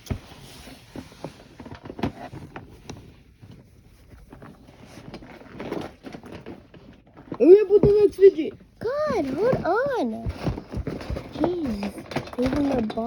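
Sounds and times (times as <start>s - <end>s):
fidget toys clicking and rustling: 4.3s - 13.0s.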